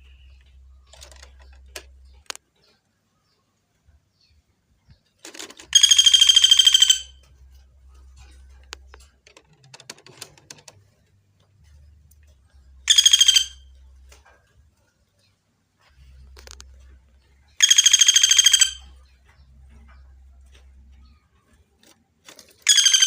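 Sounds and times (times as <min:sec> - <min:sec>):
woodpecker rapid rattling call: 0:00.0 - 0:02.3, 0:05.2 - 0:07.3, 0:12.8 - 0:13.8, 0:17.5 - 0:19.5, 0:22.6 - 0:23.0.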